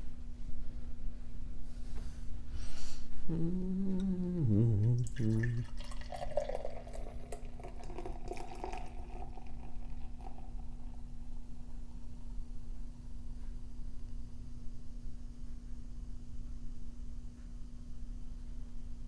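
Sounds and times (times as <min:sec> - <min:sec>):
low hummed note: 0:03.3 - 0:05.6
beer pouring and fizzing: 0:05.0 - 0:11.8.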